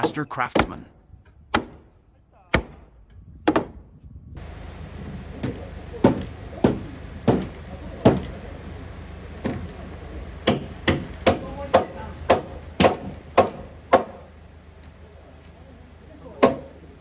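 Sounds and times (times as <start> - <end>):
wooden mallet striking timber: 0.0 - 0.8, 1.5 - 1.9, 2.5 - 3.8, 5.4 - 7.5, 10.5 - 14.2, 16.4 - 16.7.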